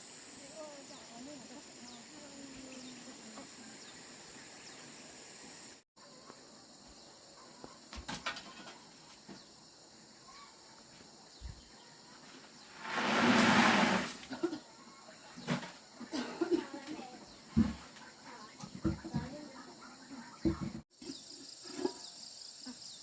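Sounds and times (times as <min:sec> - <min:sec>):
insects shrilling: 0:11.3 - 0:16.0.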